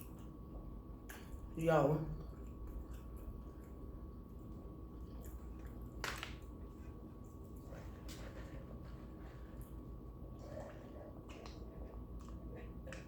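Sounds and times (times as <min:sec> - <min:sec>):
low steady hum: 0:00.0 - 0:13.0
wet chewing and mouth smacking: 0:02.2 - 0:13.0.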